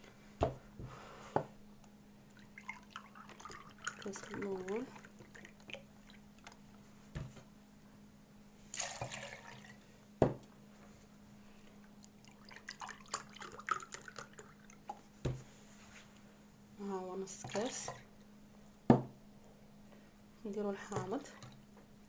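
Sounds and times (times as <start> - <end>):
milk pouring into blender jar: 8.7 - 9.8.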